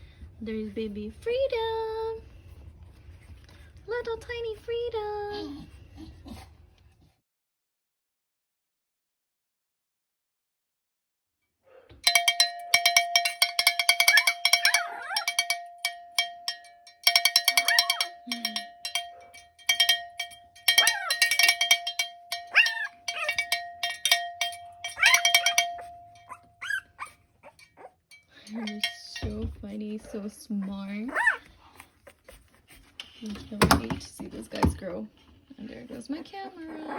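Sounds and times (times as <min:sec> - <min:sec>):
metal bell rattling: 0:12.0 - 0:29.5
puppies whimpering: 0:30.2 - 0:32.7.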